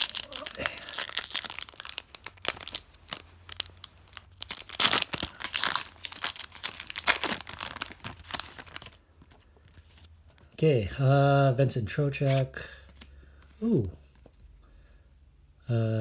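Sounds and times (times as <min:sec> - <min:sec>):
wrapper tearing and crinkling: 0:00.0 - 0:09.0.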